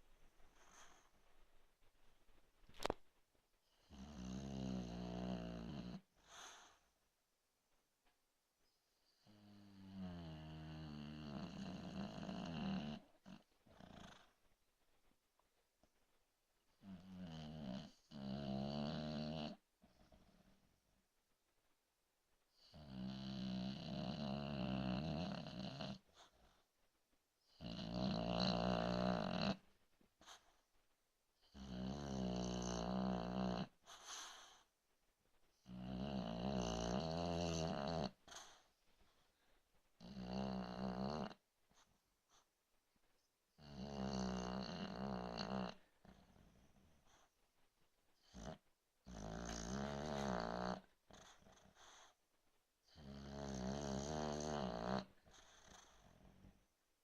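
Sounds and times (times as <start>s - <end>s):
soft breathing: 0.0s - 3.0s
person snoring: 9.5s - 14.2s, 27.6s - 29.6s, 31.5s - 33.7s, 35.7s - 38.2s, 40.0s - 41.4s, 43.6s - 46.2s, 48.2s - 51.6s, 52.9s - 55.1s.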